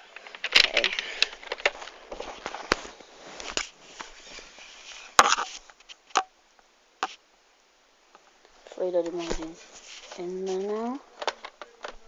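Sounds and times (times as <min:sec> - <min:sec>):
plastic magazine rattling and clicking: 0:00.2 - 0:01.8.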